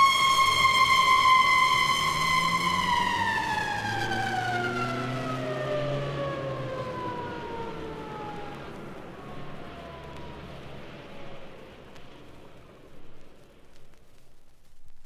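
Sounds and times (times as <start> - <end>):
siren wailing: 0.0 - 11.6.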